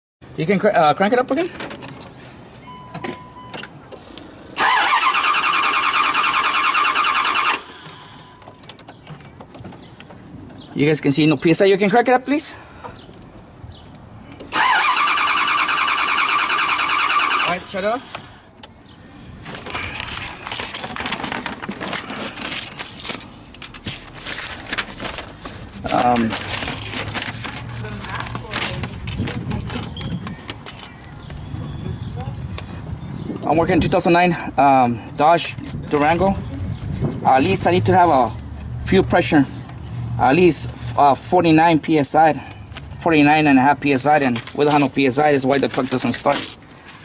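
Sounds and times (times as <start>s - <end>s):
engine cranking on starter: 4.6s - 7.9s, 14.5s - 17.7s
rustling and crackling handling noise: 19.4s - 31.4s, 44.0s - 47.0s.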